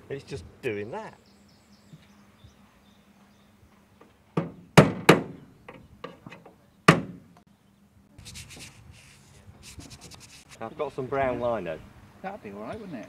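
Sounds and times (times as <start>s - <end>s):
rubbing scrape: 8.2s - 10.6s.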